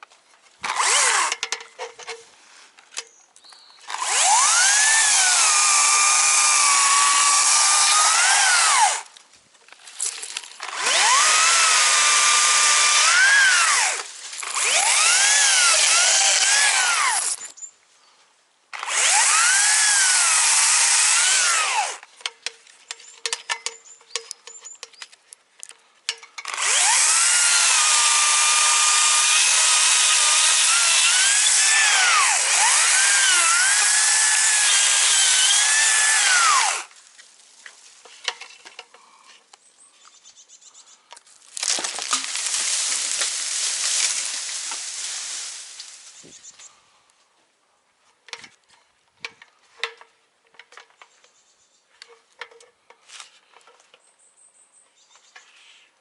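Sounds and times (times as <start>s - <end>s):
chainsaw cutting wood: 0.6s - 2.0s, 3.8s - 9.2s, 10.4s - 17.5s, 18.8s - 22.1s, 26.4s - 37.0s, 41.5s - 46.2s.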